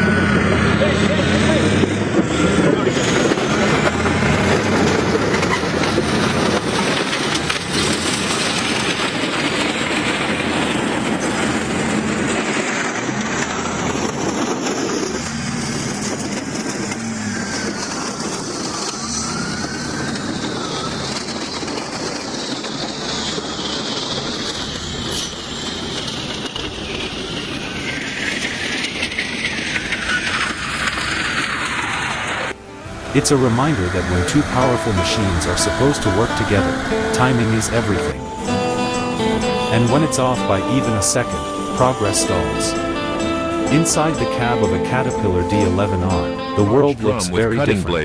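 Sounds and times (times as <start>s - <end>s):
heavy diesel machinery rumbling: 0.0s - 48.0s
rattling: 2.8s - 32.5s.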